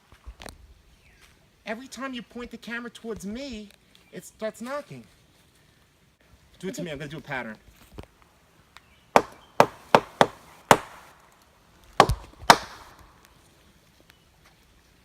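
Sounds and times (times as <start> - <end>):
knocking on a tree: 9.2 - 11.0, 12.0 - 13.0.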